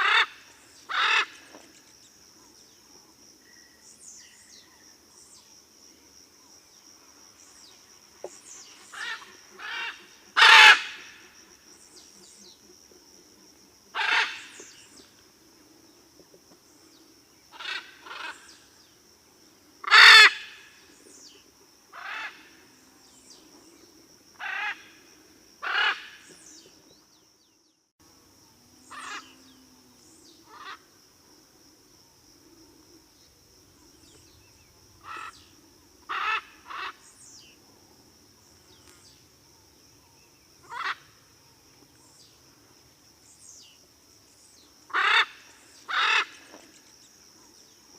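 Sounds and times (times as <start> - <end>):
macaw squawking: 0.0 - 1.4, 9.0 - 11.1, 19.9 - 20.5, 36.1 - 37.0.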